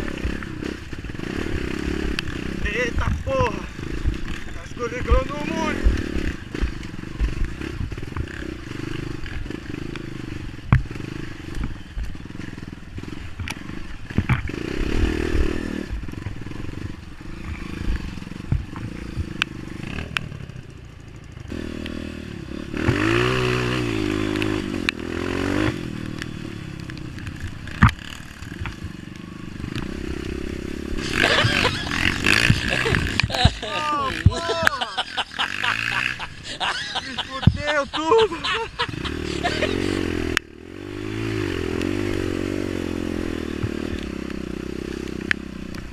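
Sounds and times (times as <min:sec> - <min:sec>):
dirt bike engine revving: 0:00.0 - 0:45.9
bike knocking and clattering: 0:13.3 - 0:14.8.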